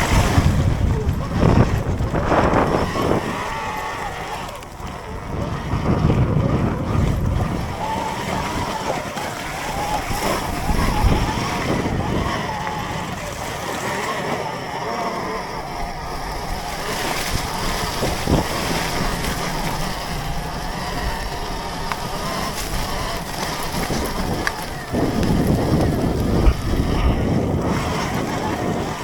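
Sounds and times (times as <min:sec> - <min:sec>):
electric dirt bike riding: 0:00.0 - 0:29.0
wind on microphone: 0:00.0 - 0:29.0.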